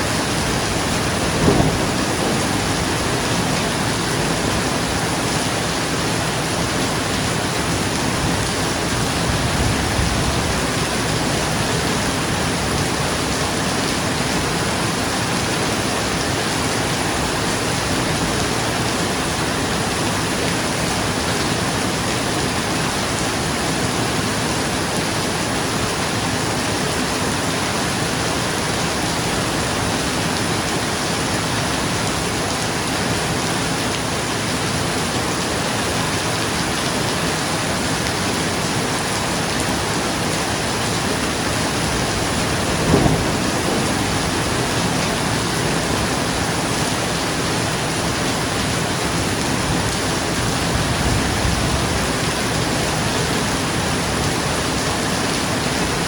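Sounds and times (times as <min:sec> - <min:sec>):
heavy rain on a roof: 0:00.0 - 0:56.0
low rumble of thunder: 0:00.1 - 0:06.4, 0:40.6 - 0:47.8.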